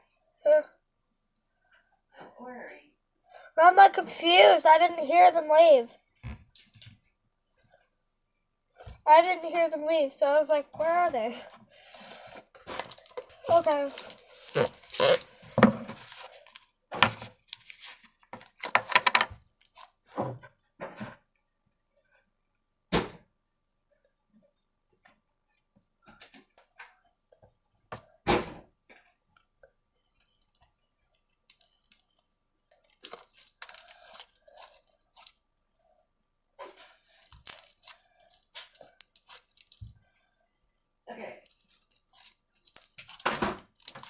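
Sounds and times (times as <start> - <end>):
slime and packaging crinkling: 11.9 - 20.0, 31.4 - 35.4, 37.2 - 39.9, 41.4 - 44.0.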